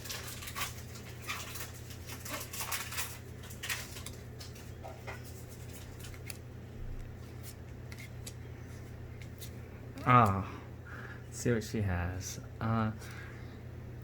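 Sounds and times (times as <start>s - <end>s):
foil wrappers crinkling: 0.0s - 6.5s
steady low hum: 0.0s - 14.0s.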